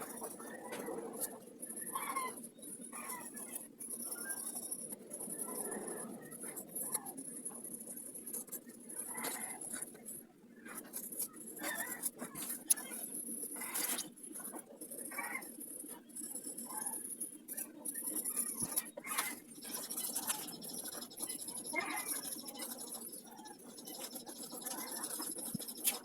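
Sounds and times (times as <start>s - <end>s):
pencil scratching on paper: 17.5s - 26.0s.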